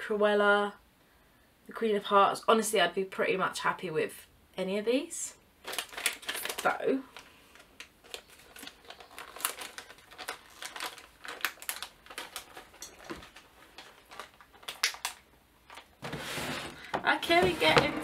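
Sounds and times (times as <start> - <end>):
packaging crinkling: 5.6 - 16.9.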